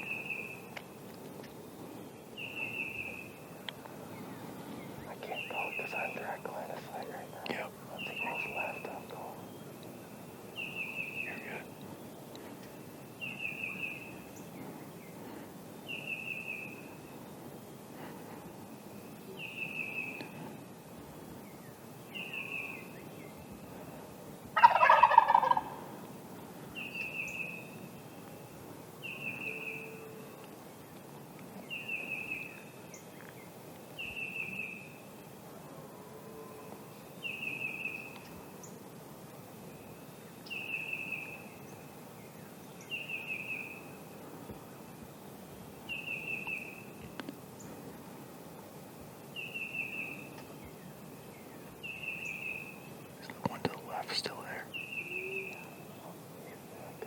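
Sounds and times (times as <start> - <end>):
turkey gobbling: 24.6 - 25.9.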